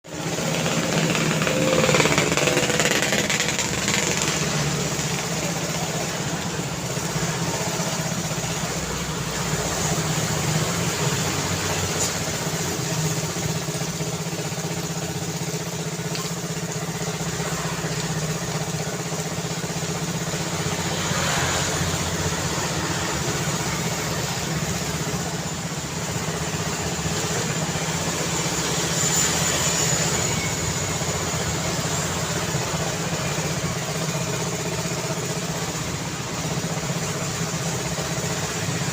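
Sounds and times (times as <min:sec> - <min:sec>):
cars passing: 0:00.1 - 0:13.5, 0:19.9 - 0:30.8.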